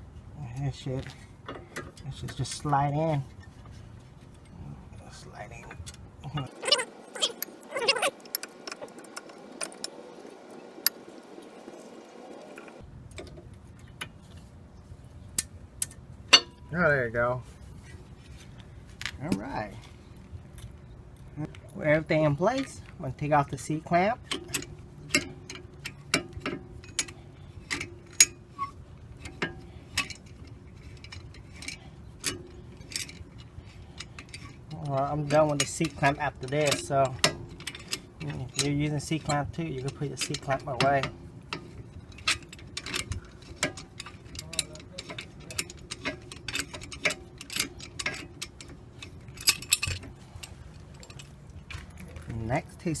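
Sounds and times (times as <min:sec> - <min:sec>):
metallic ticks and clinks: 0:29.2 - 0:52.3.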